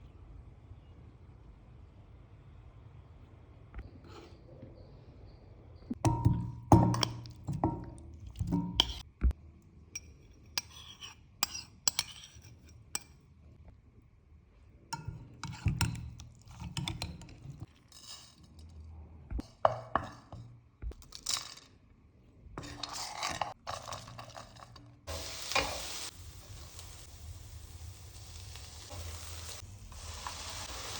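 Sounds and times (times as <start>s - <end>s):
food sizzling in a pan: 25.1s - 30.9s.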